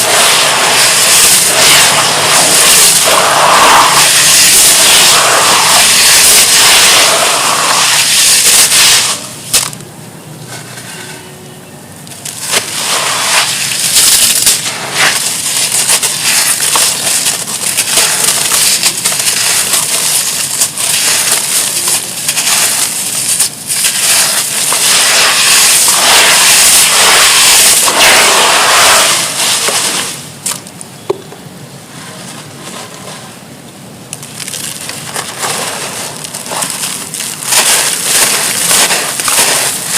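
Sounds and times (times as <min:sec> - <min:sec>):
charcoal crackling in water: 0:00.0 - 0:09.8, 0:12.1 - 0:30.8, 0:34.1 - 0:39.9.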